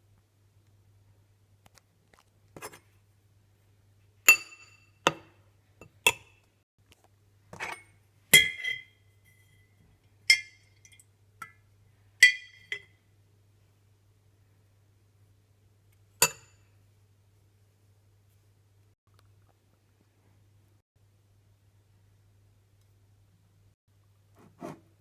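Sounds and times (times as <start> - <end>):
spoon clinking against dish: 4.3 - 6.3, 8.4 - 9.6, 10.3 - 11.6, 12.2 - 12.9, 16.2 - 16.6.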